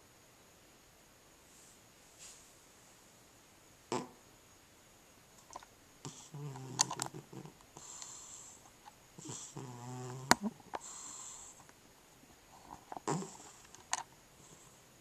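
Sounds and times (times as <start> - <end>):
cat snoring: 3.9 - 4.2, 6.0 - 8.6, 9.2 - 11.6, 12.6 - 13.7, 14.4 - 14.8.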